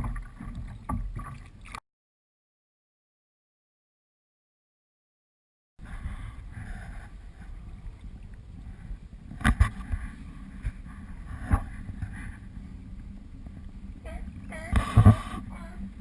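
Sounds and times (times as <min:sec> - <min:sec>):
water noise: 0:00.0 - 0:01.8, 0:05.8 - 0:16.0
wind rumble on microphone: 0:05.8 - 0:16.0.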